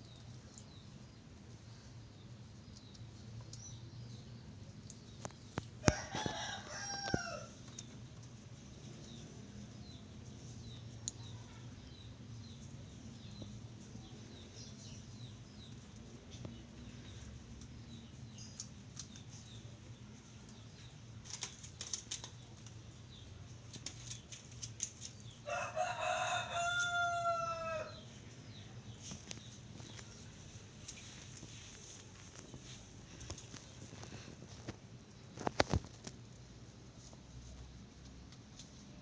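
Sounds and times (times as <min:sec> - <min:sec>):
small birds chirping: 0:00.0 - 0:39.0
rooster crowing: 0:05.8 - 0:07.5, 0:25.4 - 0:28.0.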